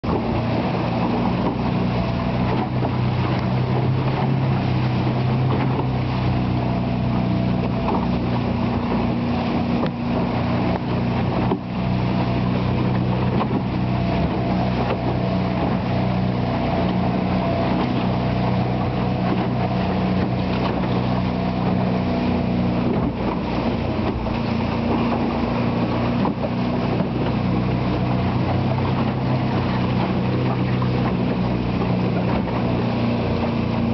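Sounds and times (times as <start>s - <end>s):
boat engine humming: 0.0s - 33.9s
water rushing: 0.0s - 33.9s.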